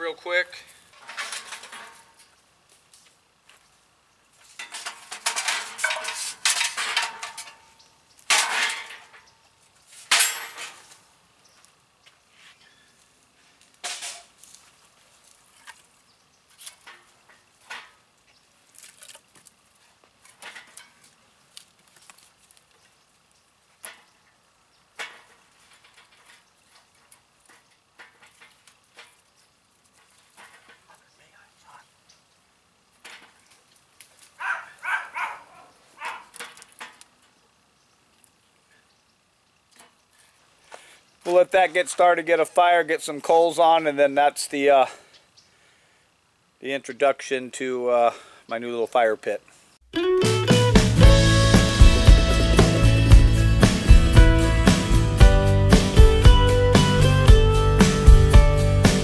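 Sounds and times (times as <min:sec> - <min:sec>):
charcoal clattering in metal fire pit: 0:00.7 - 0:03.0, 0:04.4 - 0:11.1, 0:13.6 - 0:14.7, 0:16.5 - 0:18.1, 0:18.7 - 0:22.7, 0:23.8 - 0:24.2, 0:24.9 - 0:30.9, 0:32.9 - 0:34.4, 0:36.3 - 0:37.2.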